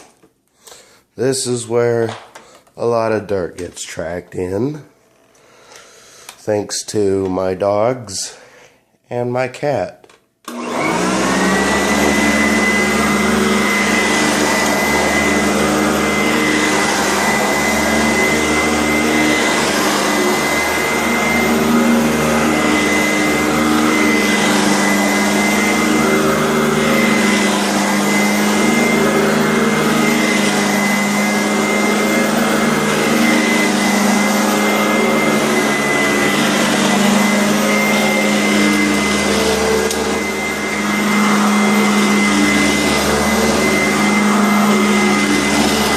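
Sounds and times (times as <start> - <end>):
vacuum cleaner running: 10.5 - 45.9.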